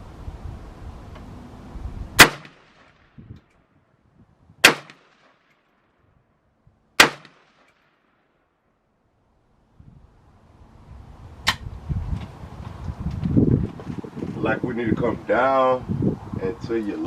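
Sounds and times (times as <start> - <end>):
rifle shots: 2.2 - 3.1, 4.6 - 5.5, 7.0 - 8.1.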